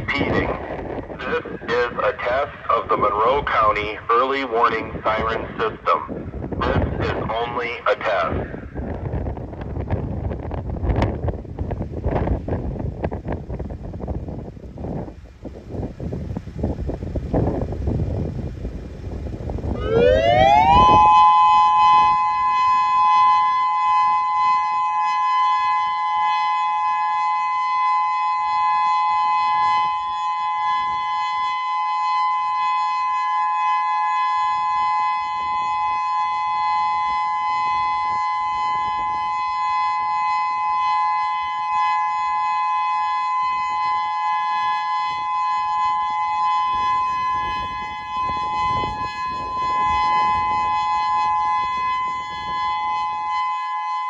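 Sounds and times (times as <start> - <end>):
electronic siren two-tone chord: 19.6 - 54.0.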